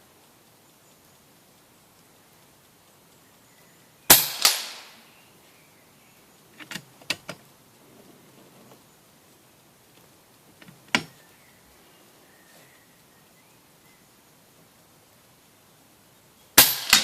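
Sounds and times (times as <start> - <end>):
pellet striking target: 4.1 - 4.9, 16.6 - 17.0
air rifle shot crack: 4.1 - 5.0, 16.6 - 17.0
metallic clicks of rifle action: 6.6 - 7.4, 16.6 - 17.0.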